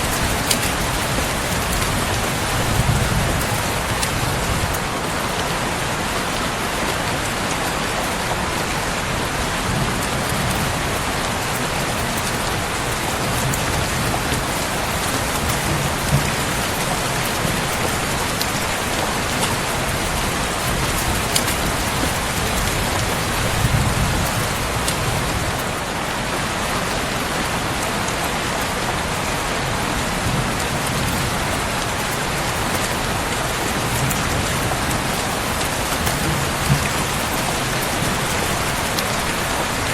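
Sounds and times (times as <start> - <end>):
steady rain falling: 0.0 - 39.9.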